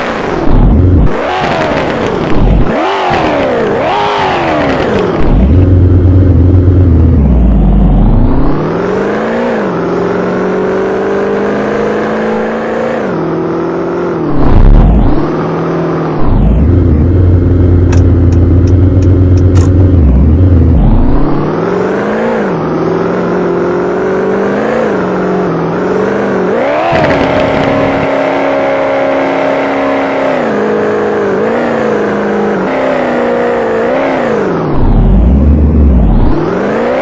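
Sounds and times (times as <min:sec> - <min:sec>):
car engine revving: 0:00.0 - 0:37.0
exhaust pops and crackles: 0:00.1 - 0:05.7, 0:26.8 - 0:28.1.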